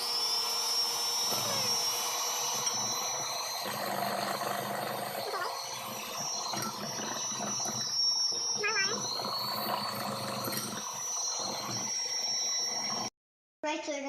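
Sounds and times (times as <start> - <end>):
electric mixer whining: 0.0 - 13.2.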